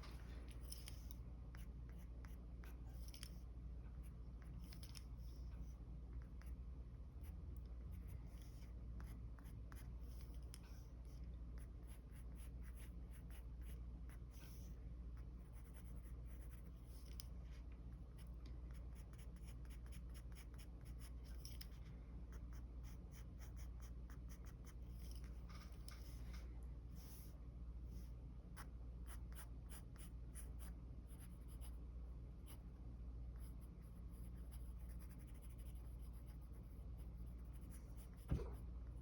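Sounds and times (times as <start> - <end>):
pencil scratching on paper: 8.0 - 17.3, 18.2 - 26.2, 28.6 - 31.8, 33.4 - 38.6.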